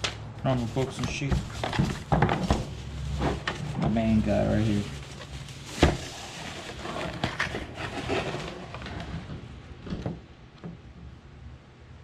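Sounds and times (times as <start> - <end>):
packaging rustling and scraping: 0.4 - 9.6.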